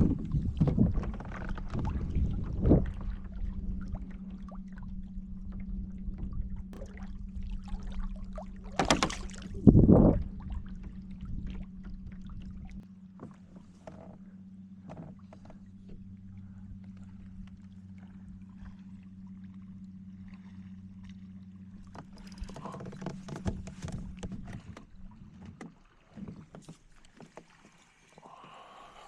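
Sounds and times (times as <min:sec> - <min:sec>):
low wind rumble: 0:00.0 - 0:25.4
steady low hum: 0:00.0 - 0:25.4
water sloshing: 0:00.0 - 0:29.0
sharp splash or knock: 0:08.7 - 0:09.6.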